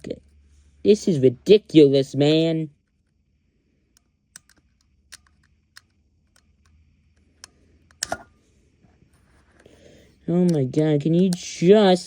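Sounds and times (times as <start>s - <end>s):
hands working wires clicking: 3.9s - 8.3s.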